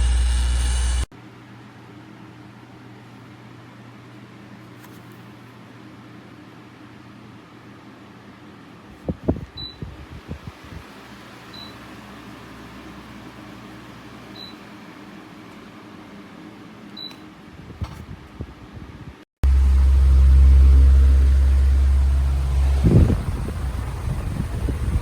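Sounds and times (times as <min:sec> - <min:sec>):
fan running: 0:00.0 - 0:25.0
handling knocks and bumps: 0:17.8 - 0:18.2.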